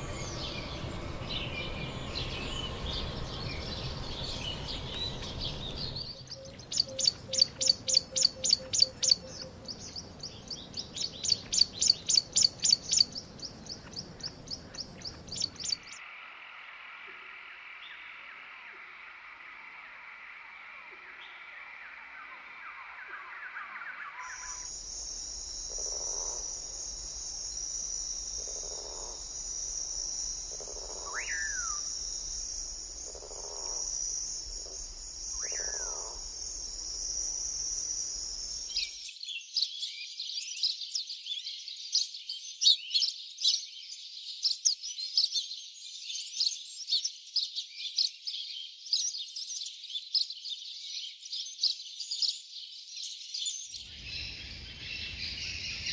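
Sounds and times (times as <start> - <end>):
high insect-like drone: 0.0 - 6.2, 24.2 - 39.0
whistled rising and falling notes: 0.0 - 6.2, 24.1 - 38.9
bird calls: 0.0 - 16.0, 19.8 - 39.7
rapid high-pitched bird chirping: 0.0 - 16.0, 24.1 - 39.0.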